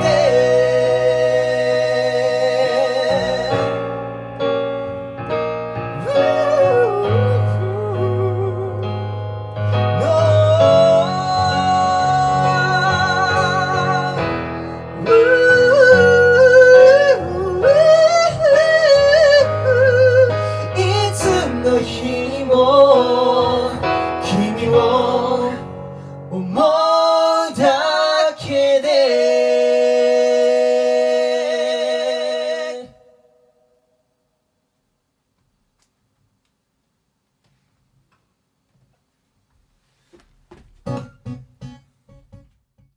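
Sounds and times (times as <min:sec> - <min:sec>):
men singing: 0:00.0 - 0:04.0, 0:06.0 - 0:09.0, 0:09.9 - 0:33.2
keyboard and bass: 0:00.0 - 0:32.9, 0:40.9 - 0:42.5.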